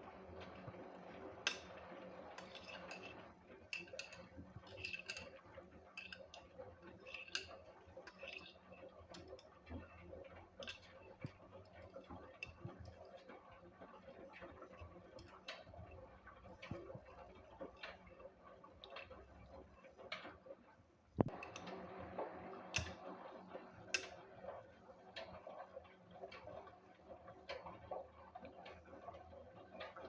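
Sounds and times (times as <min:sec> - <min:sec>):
washing machine hum: 0:00.0 - 0:04.0.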